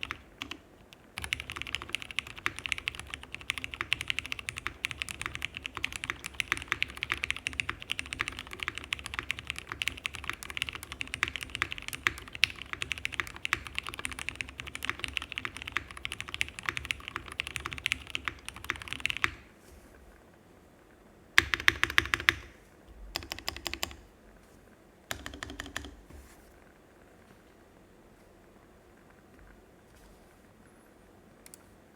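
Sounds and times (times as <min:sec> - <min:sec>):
typing on mechanical keyboard: 0:00.0 - 0:19.5, 0:21.4 - 0:24.0, 0:25.1 - 0:26.1.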